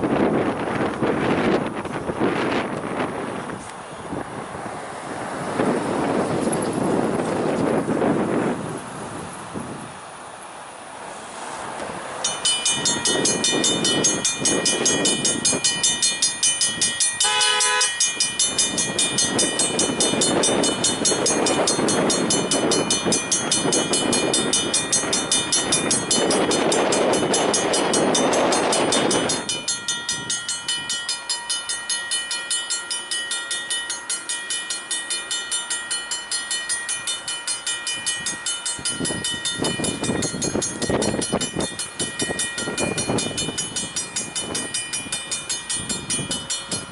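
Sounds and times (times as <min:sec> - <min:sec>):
locomotive engine and wheels rumbling: 0:00.0 - 0:46.9
crossing signal bell ringing: 0:05.4 - 0:08.4, 0:12.2 - 0:46.9
train horn blast: 0:17.2 - 0:18.0.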